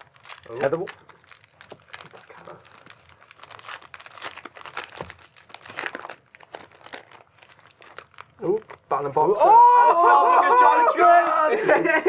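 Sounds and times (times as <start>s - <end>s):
foil wrappers crinkling and tearing: 0.0s - 9.4s.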